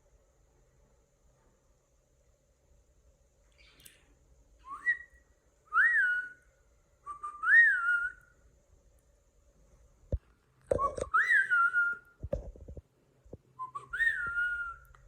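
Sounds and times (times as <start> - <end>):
cockatiel whistling: 4.6 - 8.3, 10.8 - 12.2, 13.6 - 15.0.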